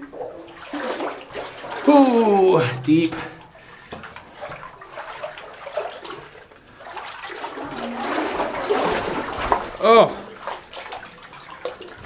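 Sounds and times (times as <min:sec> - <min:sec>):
person wading through water: 0:00.0 - 0:12.0.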